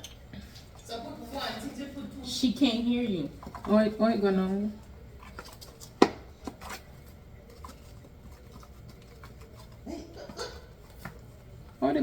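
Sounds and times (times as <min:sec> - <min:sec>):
kitchen utensils clicking and tapping: 0:00.0 - 0:01.0.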